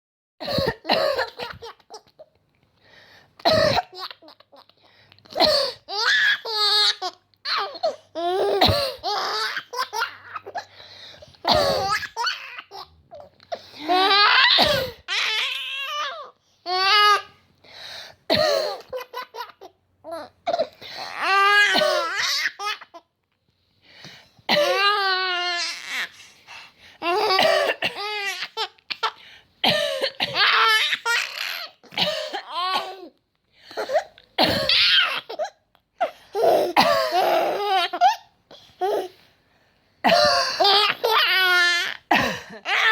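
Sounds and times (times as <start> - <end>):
woman coughing: 0.4 - 1.7, 3.4 - 4.0, 8.6 - 9.0, 11.5 - 12.0, 14.6 - 15.0, 18.3 - 18.9, 21.7 - 22.2, 24.5 - 24.8, 27.4 - 28.1, 31.9 - 33.0, 34.4 - 34.9, 36.6 - 37.4, 40.0 - 40.7, 42.1 - 42.9.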